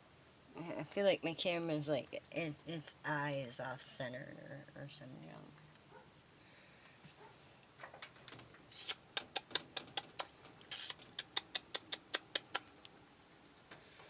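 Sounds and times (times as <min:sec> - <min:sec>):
rapid sharp clicks: 0:09.2 - 0:13.0.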